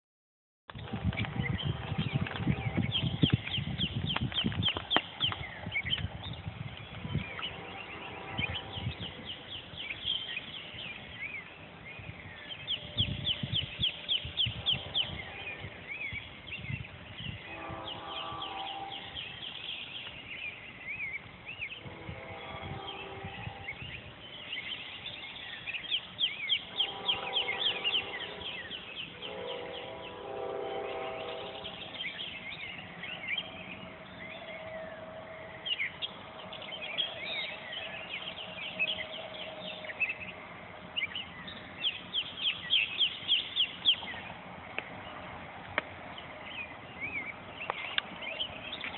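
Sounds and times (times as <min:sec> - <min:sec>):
birds singing: 0:00.7 - 0:48.9
train horn blasts: 0:01.4 - 0:03.4, 0:07.1 - 0:09.4, 0:12.5 - 0:16.2, 0:17.3 - 0:19.5, 0:21.7 - 0:24.1, 0:26.6 - 0:40.3.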